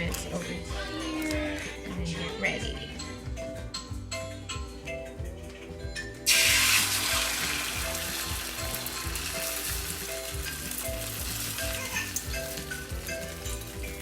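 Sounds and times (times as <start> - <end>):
eggs sizzling in hot oil: 6.2 - 14.0.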